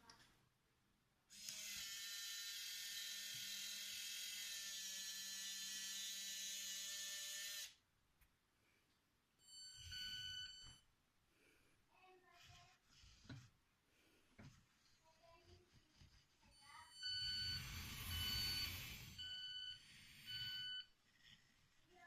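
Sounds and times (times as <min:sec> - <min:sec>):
small electric motor whining: 0:01.3 - 0:07.8, 0:16.4 - 0:21.8
short tone: 0:09.4 - 0:10.8, 0:16.6 - 0:20.9.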